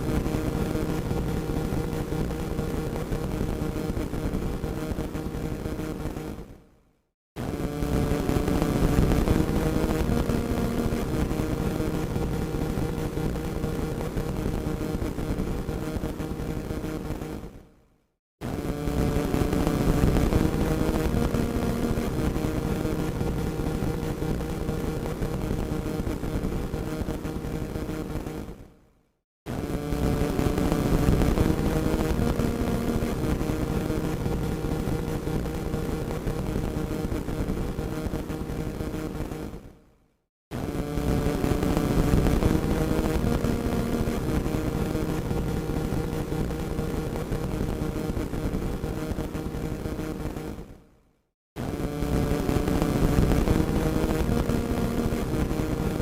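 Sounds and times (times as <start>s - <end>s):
radio static crackling: 7.4s - 17.5s, 18.5s - 28.5s, 29.5s - 39.6s, 40.6s - 50.6s, 51.6s - 56.0s.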